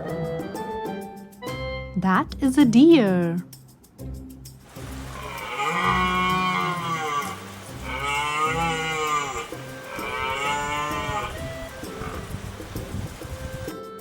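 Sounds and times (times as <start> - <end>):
faint background music: 0.0 - 14.0
deer calling: 4.7 - 13.5.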